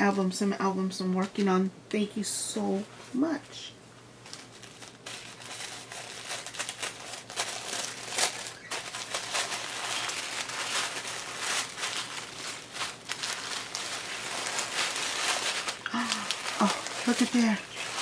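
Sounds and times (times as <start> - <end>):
packaging crinkling: 4.2 - 18.0.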